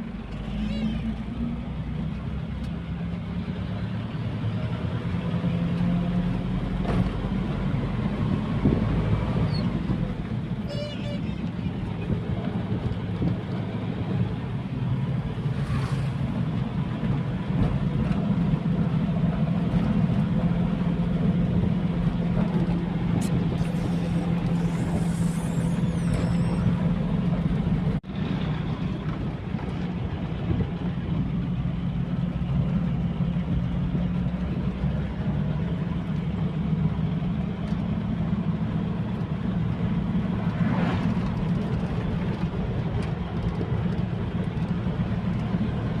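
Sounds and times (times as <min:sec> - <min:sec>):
road noise: 0:00.0 - 0:46.0.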